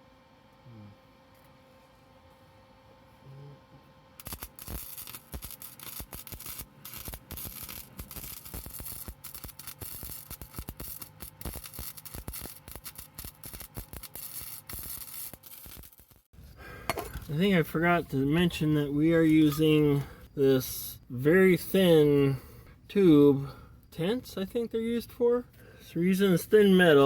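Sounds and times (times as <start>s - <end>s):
arc welding crackle and sputter: 4.2s - 16.3s.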